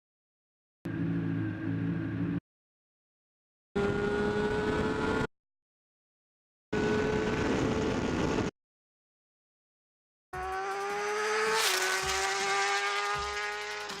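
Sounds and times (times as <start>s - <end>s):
motorcycle exhaust at high revs: 10.4s - 14.0s
rising whoosh: 10.5s - 13.8s.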